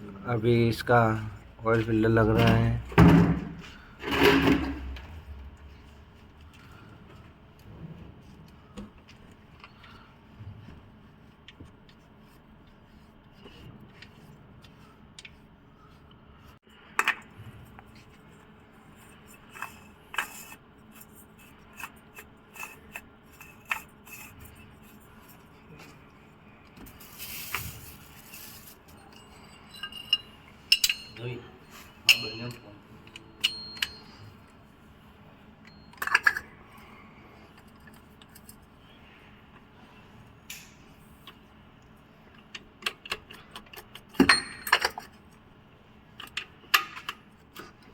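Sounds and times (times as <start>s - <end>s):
metal tools clinking and scraping: 27.8s - 34.6s, 35.6s - 38.7s, 43.6s - 45.2s.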